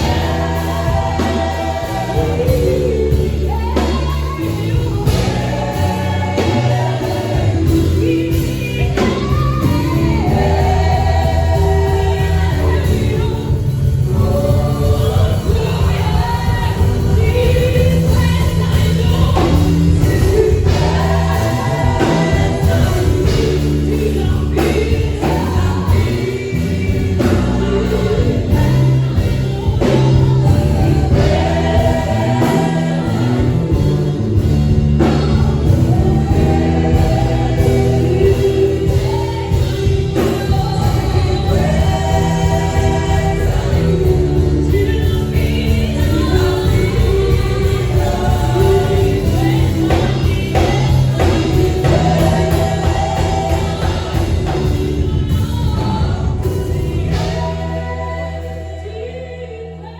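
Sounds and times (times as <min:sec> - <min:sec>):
band playing a regular beat: 0:00.0 - 0:58.9
choir singing: 0:00.0 - 0:59.9.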